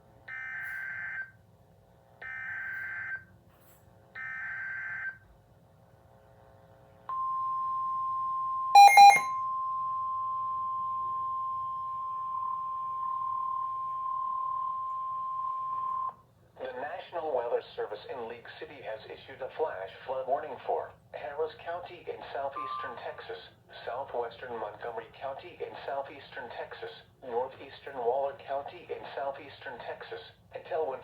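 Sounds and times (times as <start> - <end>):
loud short beeps: 8.8 - 9.4
steady warning alarm tone: 8.8 - 9.4.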